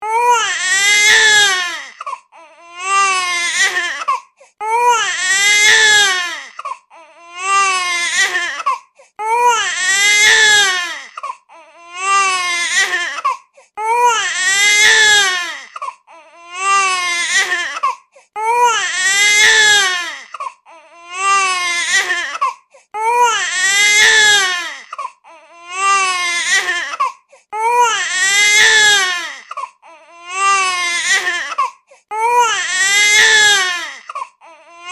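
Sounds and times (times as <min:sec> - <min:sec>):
infant crying: 0:00.0 - 0:34.9
infant breathing: 0:04.0 - 0:04.7, 0:08.6 - 0:09.2, 0:13.2 - 0:13.8, 0:17.8 - 0:18.4, 0:22.3 - 0:23.0, 0:26.9 - 0:27.6, 0:31.5 - 0:32.2.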